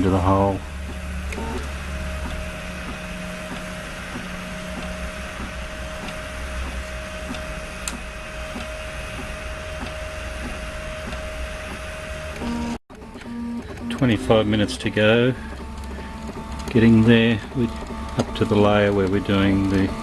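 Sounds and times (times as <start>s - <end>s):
stepper motors whining: 0.0s - 20.0s.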